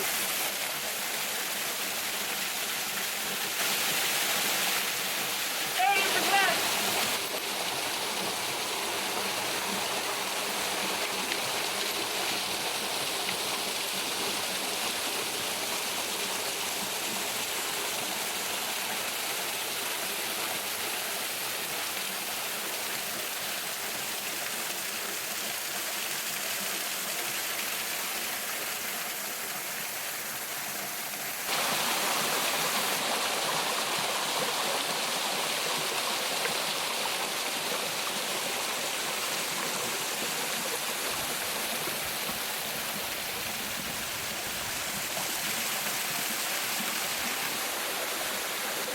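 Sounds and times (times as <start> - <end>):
waterfall rushing: 0.0 - 24.8, 31.4 - 48.9.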